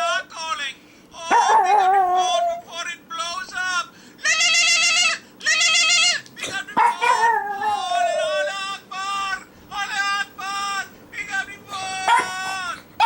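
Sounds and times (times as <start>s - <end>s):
dog howling: 1.3s - 2.6s, 6.8s - 8.6s, 11.7s - 12.8s.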